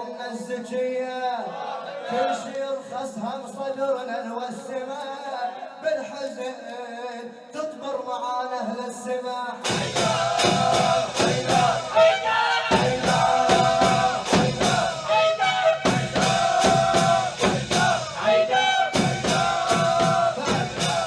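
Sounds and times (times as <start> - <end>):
fast percussion beat: 9.6 - 21.0.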